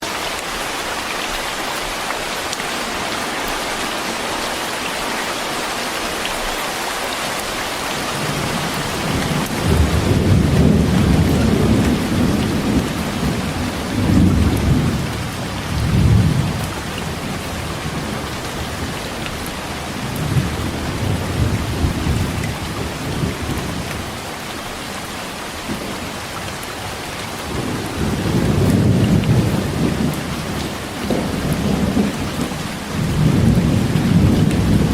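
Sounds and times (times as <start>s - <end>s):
heavy rain falling: 0.0s - 34.9s
thunder rumbling: 8.0s - 18.2s, 27.4s - 34.9s.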